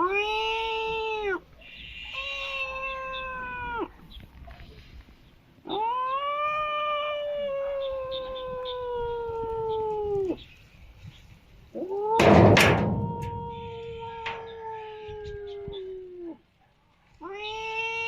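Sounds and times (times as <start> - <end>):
cat-like yowling calls: 0.0 - 4.0, 5.7 - 10.4, 13.0 - 16.4.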